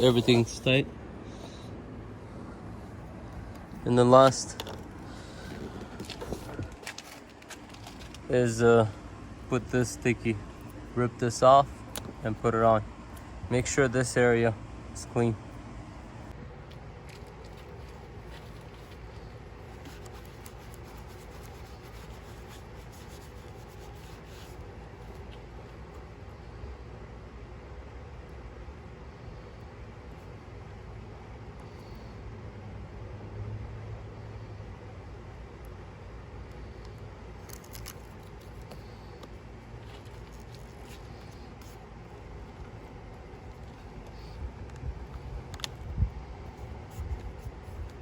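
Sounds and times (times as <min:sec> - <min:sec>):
low background hum: 0:00.0 - 0:48.0
low background rumble: 0:00.0 - 0:48.0
light handling noises: 0:02.8 - 0:13.8, 0:16.3 - 0:26.2, 0:36.4 - 0:48.0.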